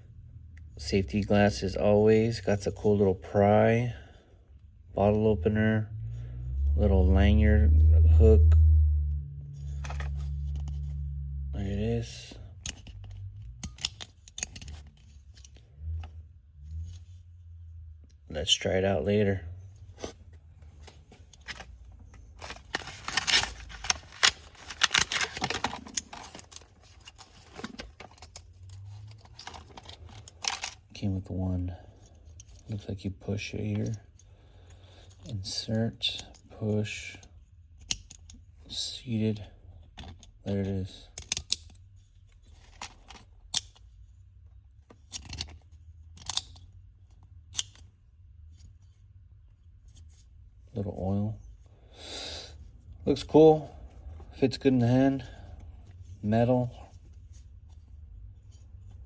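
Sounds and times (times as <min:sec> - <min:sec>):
scraping rustles: 0:19.7 - 0:31.2.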